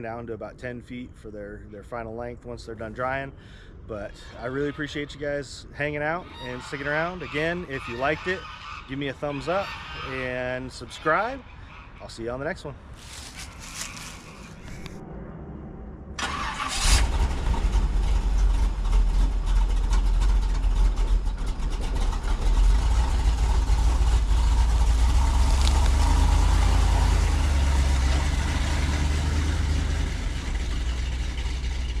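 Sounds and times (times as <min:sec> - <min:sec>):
engine starting and rumbling: 0:16.2 - 0:32.0.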